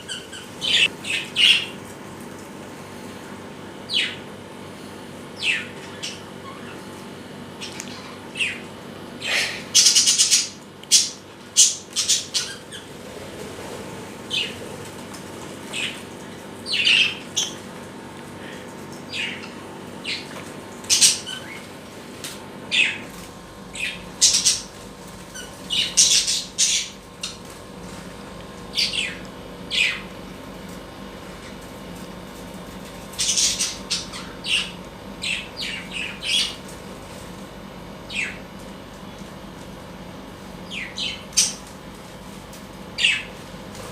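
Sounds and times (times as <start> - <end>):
birds squawking and chirping: 0.0 - 1.8, 3.9 - 4.3, 5.3 - 13.4, 14.2 - 14.8, 15.5 - 17.7, 18.3 - 21.8, 22.6 - 27.5, 28.7 - 30.2, 33.1 - 36.6, 38.0 - 38.4, 40.6 - 41.7, 42.9 - 43.3.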